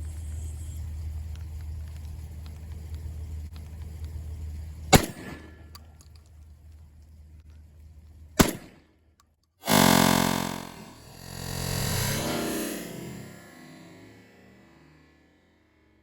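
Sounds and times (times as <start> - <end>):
shotgun shots: 4.9 - 5.6, 8.4 - 8.8.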